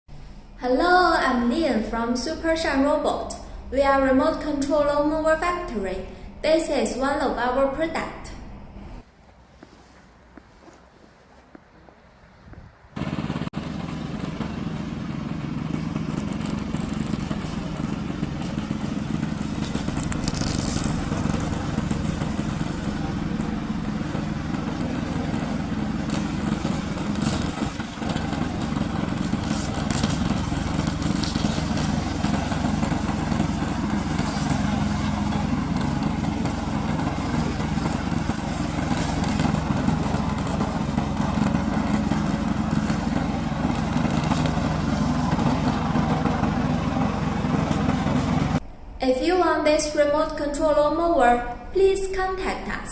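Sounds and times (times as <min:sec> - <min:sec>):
high crackles: 0:13.0 - 0:48.6
lawn mower engine running: 0:13.0 - 0:48.6.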